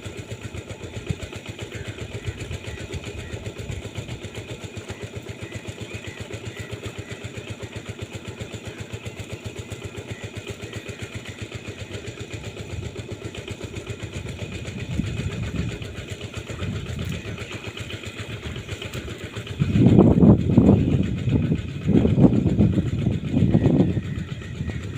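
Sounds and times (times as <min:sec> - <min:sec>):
small engine running: 0:00.0 - 0:24.9
uneven low rumbling: 0:14.1 - 0:24.9.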